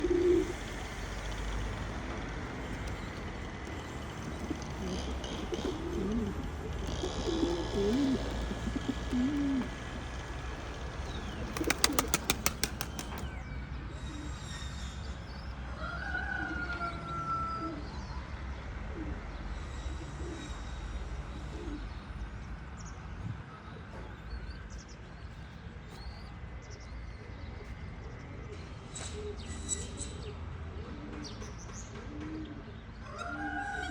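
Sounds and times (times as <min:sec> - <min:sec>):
pigeons cooing: 0:00.0 - 0:13.4
wing claps: 0:11.5 - 0:13.3.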